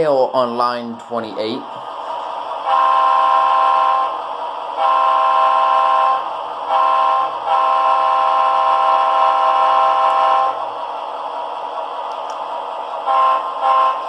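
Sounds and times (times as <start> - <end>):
train air horn through small speaker: 2.6 - 4.2, 4.8 - 10.7, 13.0 - 14.0.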